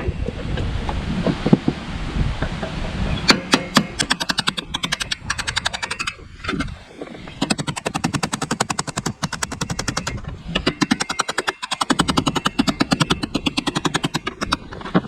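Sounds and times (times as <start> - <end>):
ratchet wrench clicking: 3.5 - 6.7, 7.3 - 14.7.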